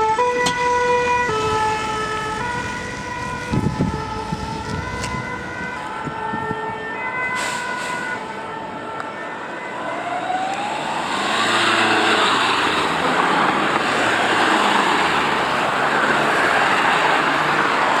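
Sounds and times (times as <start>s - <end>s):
motor vehicle passing: 9.6s - 18.0s.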